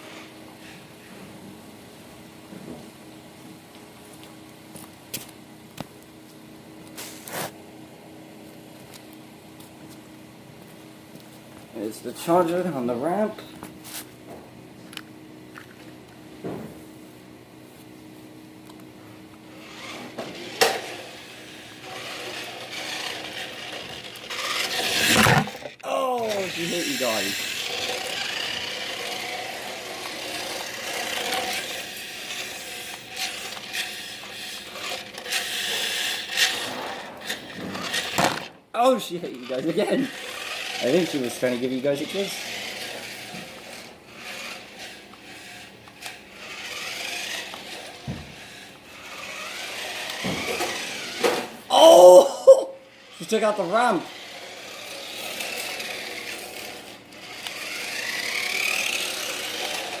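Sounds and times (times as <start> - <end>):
wheels scraping on floor: 6.9 - 7.6, 13.4 - 14.2, 19.5 - 51.7, 53.1 - 60.0
toy car motor whirring: 19.5 - 60.0.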